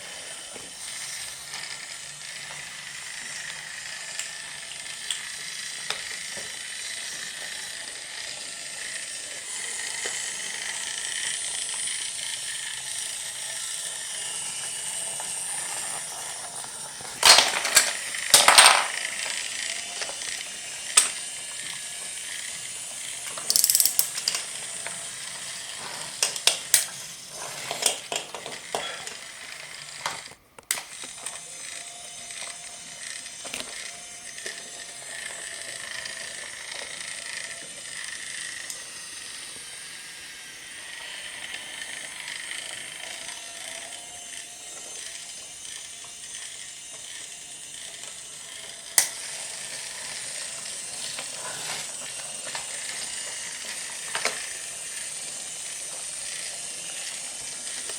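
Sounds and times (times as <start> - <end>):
toy train motor whirring: 0.0 - 57.9
clattering clicks: 23.3 - 24.5.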